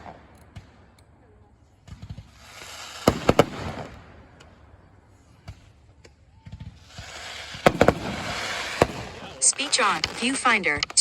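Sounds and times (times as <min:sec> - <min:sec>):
fireworks bangs: 0:00.0 - 0:11.0
fireworks crackling hiss: 0:01.8 - 0:05.8, 0:06.6 - 0:11.0.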